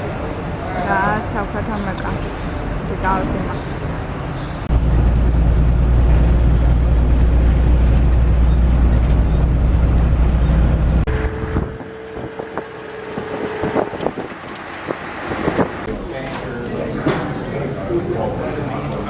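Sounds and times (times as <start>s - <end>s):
boat engine drone: 0.0s - 15.9s
steady high tone: 11.0s - 13.9s.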